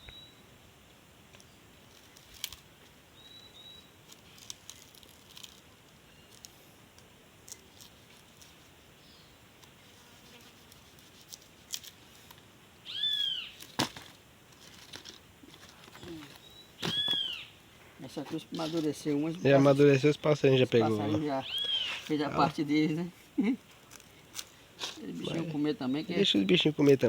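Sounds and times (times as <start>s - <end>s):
high animal call: 12.9s - 13.6s, 16.0s - 17.5s, 21.0s - 22.1s.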